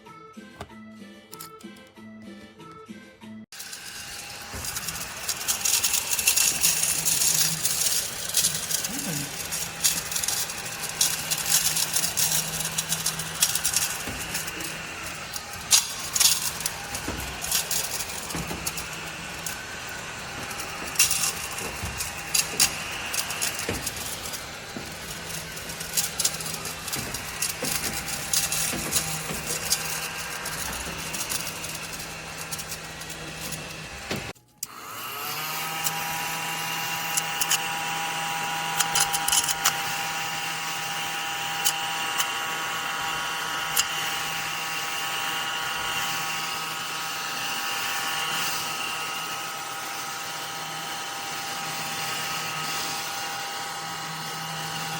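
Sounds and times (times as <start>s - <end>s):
sharp clicks and rattles: 0.6s - 2.8s, 3.6s - 34.7s
vacuum cleaner humming: 0.6s - 2.9s, 3.5s - 54.9s.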